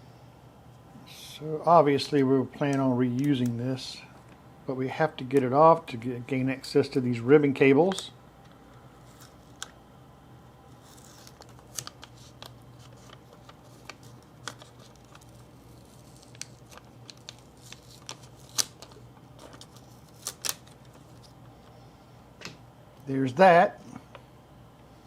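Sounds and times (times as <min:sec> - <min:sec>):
protective film peeling crackles: 0:09.0 - 0:09.8, 0:10.7 - 0:21.4.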